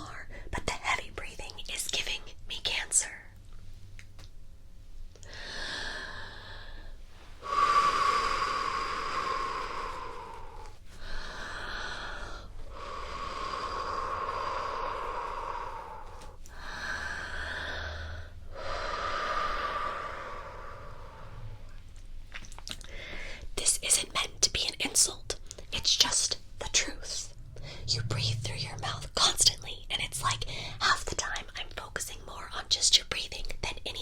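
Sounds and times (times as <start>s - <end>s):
slow deep breaths: 5.1s - 22.0s, 22.8s - 23.6s, 26.6s - 31.7s.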